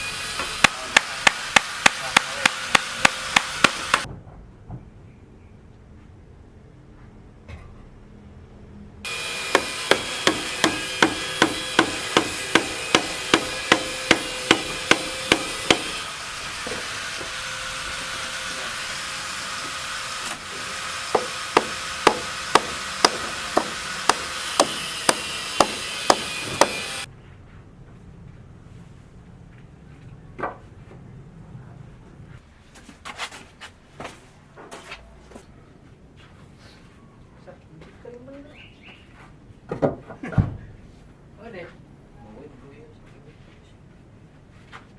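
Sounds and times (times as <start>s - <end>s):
hammer blows: 9.1s - 27.1s.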